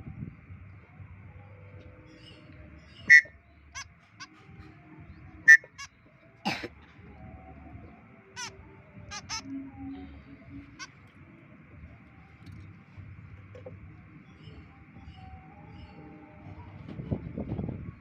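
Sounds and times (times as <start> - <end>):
bird harsh calls: 2.2 - 4.8, 8.2 - 11.1.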